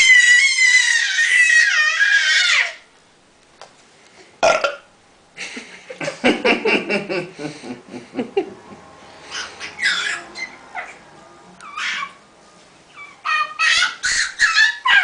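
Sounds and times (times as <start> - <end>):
baby squealing and babbling: 0.0 - 2.9, 9.3 - 11.0, 11.6 - 12.2, 13.0 - 15.0.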